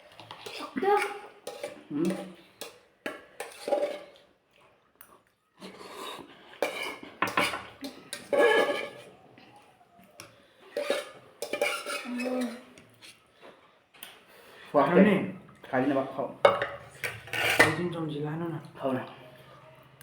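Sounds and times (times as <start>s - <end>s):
cutlery clinking on dishes: 0.3s - 4.2s, 5.7s - 9.1s, 10.7s - 12.6s, 16.4s - 17.8s.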